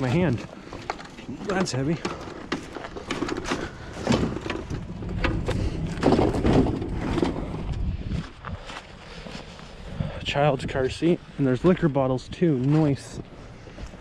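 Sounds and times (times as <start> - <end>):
junk knocking and clattering: 0.0 - 7.8
rustling of junk: 0.0 - 9.7.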